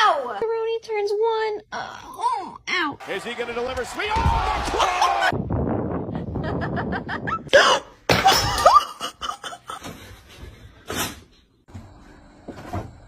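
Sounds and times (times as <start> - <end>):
person laughing: 6.2 - 7.8.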